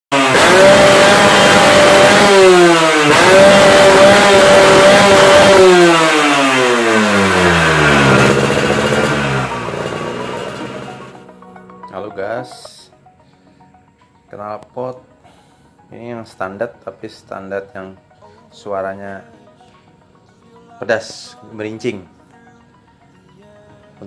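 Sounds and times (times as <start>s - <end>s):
motorcycle engine revving: 0.1s - 11.3s.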